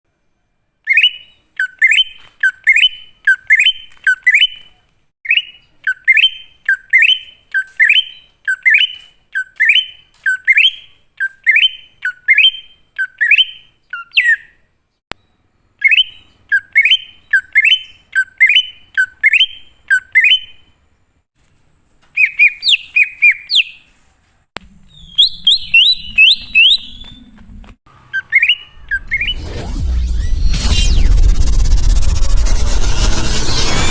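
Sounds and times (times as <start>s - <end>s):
bird whistling swooping notes: 28.1s - 33.9s.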